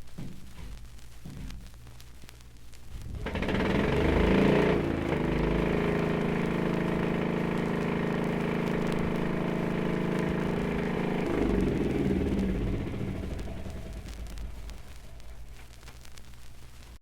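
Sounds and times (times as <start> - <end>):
low rumbling: 2.8 - 15.6
steady mechanical drone: 2.9 - 15.8.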